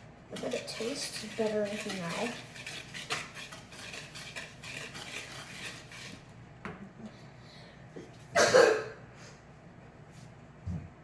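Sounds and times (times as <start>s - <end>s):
whisk scraping in bowl: 0.3s - 6.4s
person coughing: 8.4s - 9.0s.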